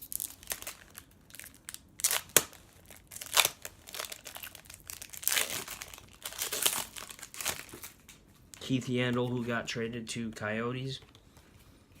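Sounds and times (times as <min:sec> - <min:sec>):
crinkling card packs: 0:00.0 - 0:11.4.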